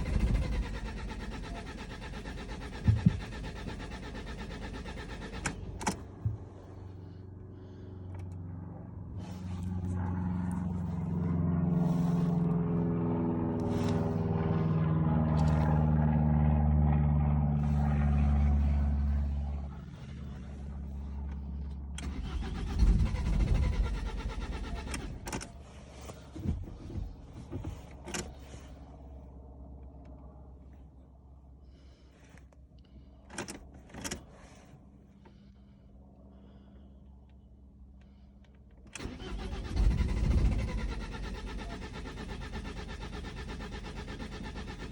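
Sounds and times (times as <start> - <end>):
diesel engine cranking on starter: 0.0 - 8.4, 13.5 - 14.4, 17.6 - 28.9, 32.8 - 35.6, 38.0 - 44.9.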